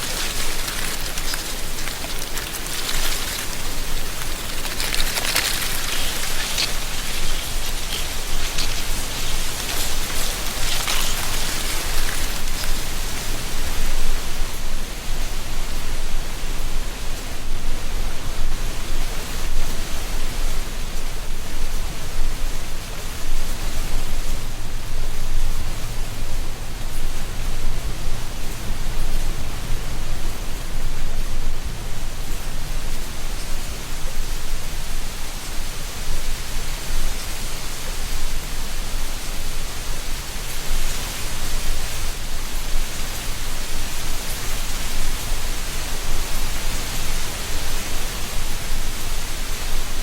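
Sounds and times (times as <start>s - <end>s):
wind rustling dry leaves: 0.0s - 50.0s.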